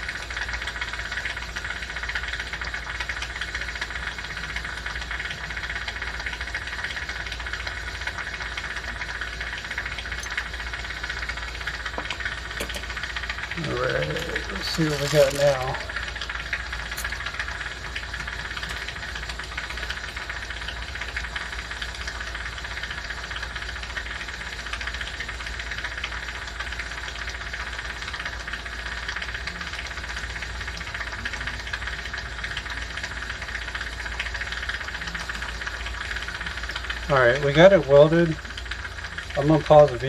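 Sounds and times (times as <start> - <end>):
jewelry steamer humming: 0.0 - 40.0
welding torch flame hissing: 3.2 - 24.6.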